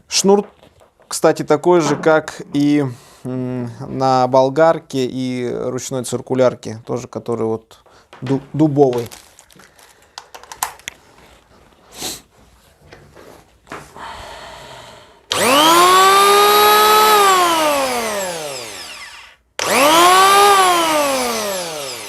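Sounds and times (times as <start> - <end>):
electric planer whine: 15.3 - 22.0.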